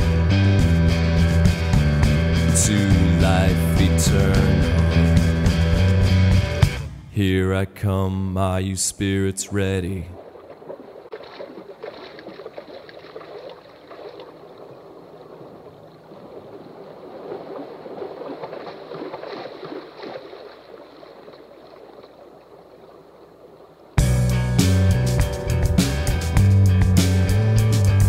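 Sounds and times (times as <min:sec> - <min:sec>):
band playing loudly: 0:00.0 - 0:07.1, 0:24.0 - 0:28.0
water splashing and gurgling: 0:09.0 - 0:24.0.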